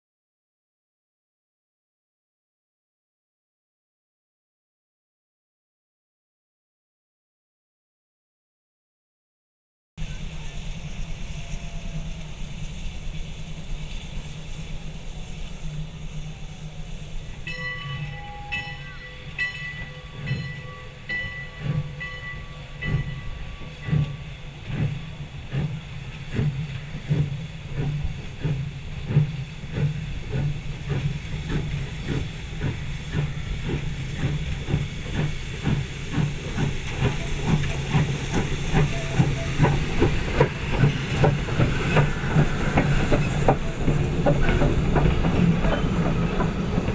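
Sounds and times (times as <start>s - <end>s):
multi-tone steam whistle: 10.0s - 28.5s, 35.6s - 46.9s
locomotive exhaust chuffs: 10.0s - 46.9s
steam locomotive hissing: 10.0s - 46.9s.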